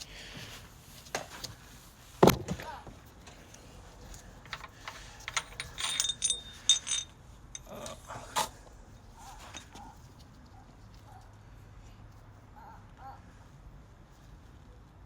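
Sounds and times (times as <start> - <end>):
clinks of steel tools: 4.4 - 8.0, 9.3 - 9.8
short metallic ring: 5.3 - 7.7.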